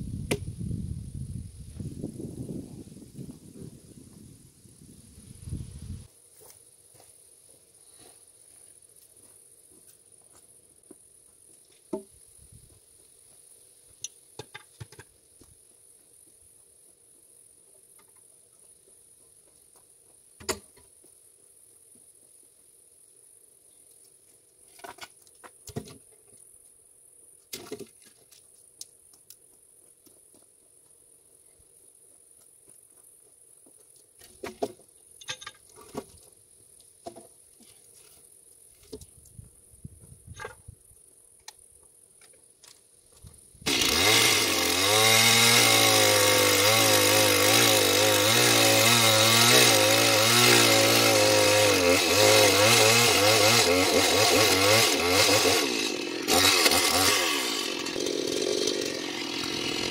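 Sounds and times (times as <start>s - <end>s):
insects chirring: 0.1s - 43.9s.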